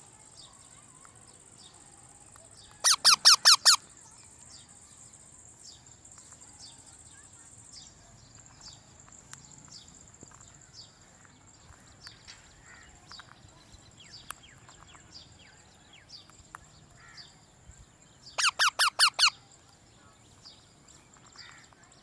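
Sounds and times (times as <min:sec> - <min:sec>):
birds chirping: 0:00.0 - 0:22.0
parrot squawking: 0:02.8 - 0:03.8, 0:18.4 - 0:19.3.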